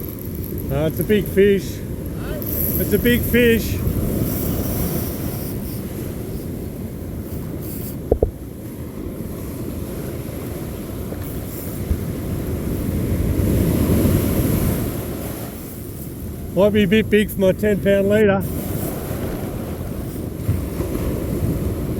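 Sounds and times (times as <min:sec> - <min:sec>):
wind buffeting microphone: 0:00.0 - 0:17.8
beach surf: 0:00.0 - 0:21.9.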